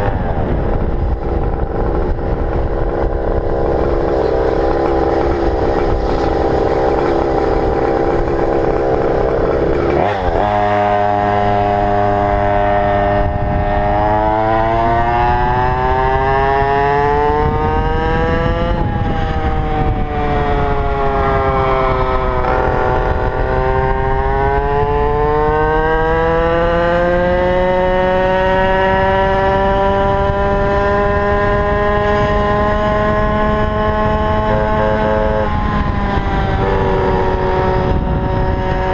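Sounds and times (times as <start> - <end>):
small two-stroke scooter engine revving: 0.0 - 38.9.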